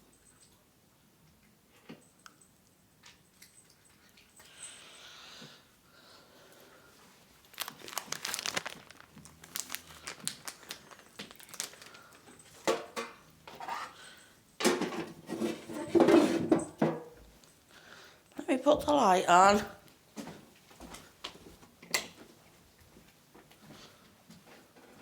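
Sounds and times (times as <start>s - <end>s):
crinkly packet crackling: 7.4s - 12.2s.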